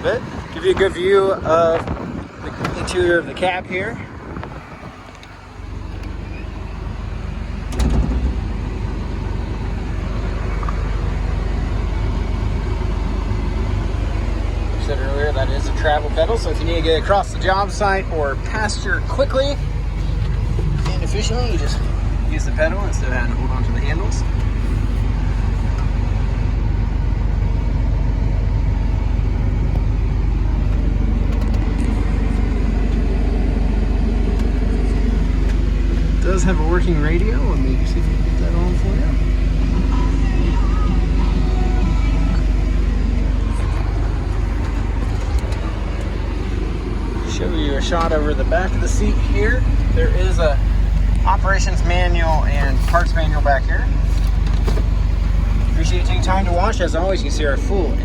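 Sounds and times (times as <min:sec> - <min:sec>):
excavator diesel engine rumbling: 0:00.0 - 0:58.0
single thump: 0:07.7 - 0:08.4.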